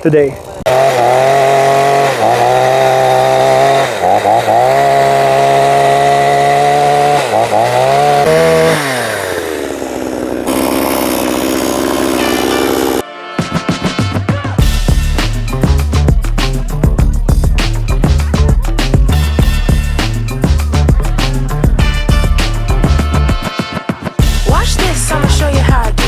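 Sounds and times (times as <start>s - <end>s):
chainsaw cutting logs: 0.4s - 13.0s.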